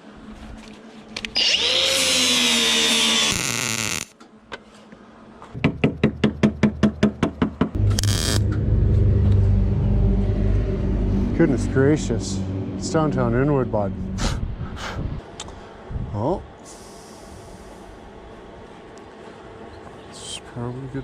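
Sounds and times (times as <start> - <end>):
power tool whirring: 1.2 - 4.1.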